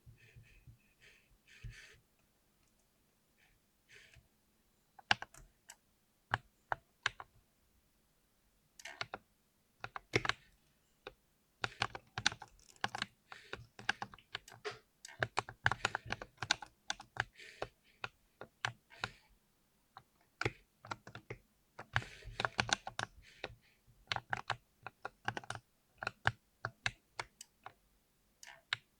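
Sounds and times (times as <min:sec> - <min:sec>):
mechanical keyboard typing: 0:11.6 - 0:17.3, 0:24.1 - 0:27.5.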